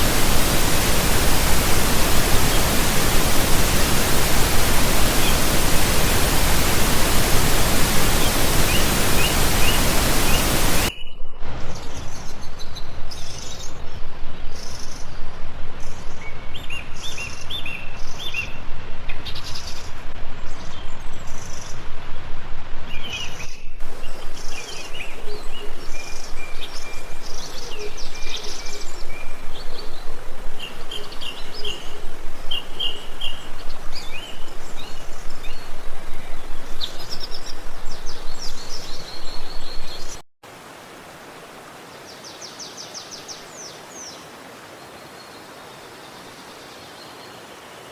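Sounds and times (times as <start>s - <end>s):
stream rushing: 0.0s - 10.9s, 23.8s - 46.4s
small birds chirping: 0.0s - 11.2s, 23.1s - 40.2s.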